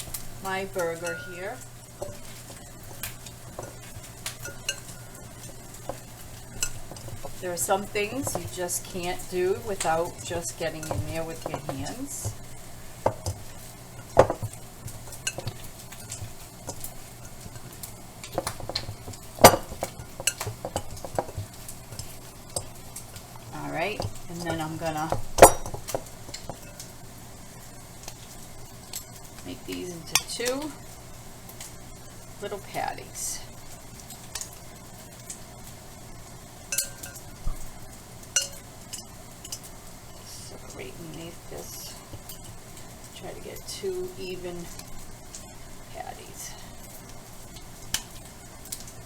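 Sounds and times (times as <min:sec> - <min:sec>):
exhaust fan hum: 0:00.0 - 0:49.0
dishes and utensils clinking: 0:00.8 - 0:12.4, 0:13.0 - 0:22.7, 0:23.6 - 0:26.9, 0:36.7 - 0:37.3.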